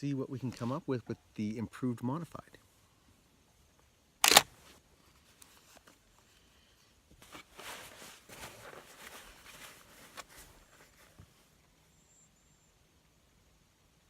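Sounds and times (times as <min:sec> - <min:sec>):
shotgun shot: 0:04.2 - 0:04.5
faint rustling: 0:04.3 - 0:11.8.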